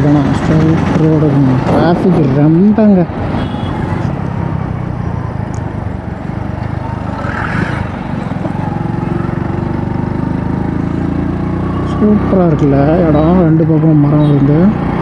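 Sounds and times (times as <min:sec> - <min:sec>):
wind and road noise: 0:00.0 - 0:15.0
motorcycle engine running: 0:03.9 - 0:15.0.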